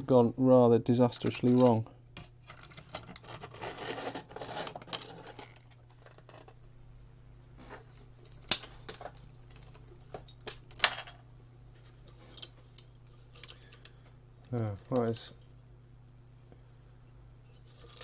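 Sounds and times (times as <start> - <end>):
steady low hum: 5.6 - 17.8.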